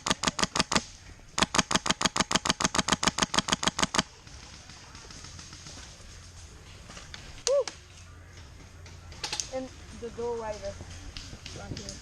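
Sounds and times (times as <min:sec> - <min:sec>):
airsoft gun firing: 0:00.0 - 0:00.8, 0:01.4 - 0:04.1.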